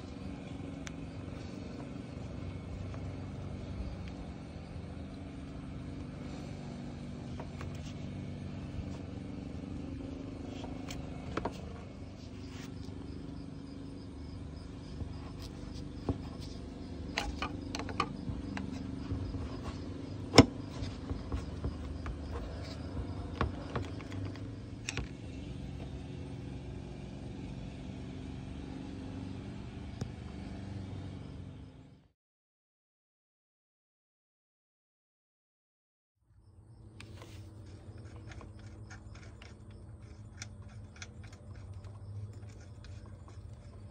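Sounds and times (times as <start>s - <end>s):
car engine idling: 0.0s - 32.0s.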